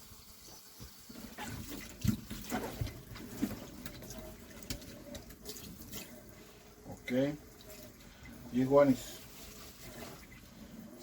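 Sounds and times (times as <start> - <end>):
tap water running into sink: 0.2 - 8.9.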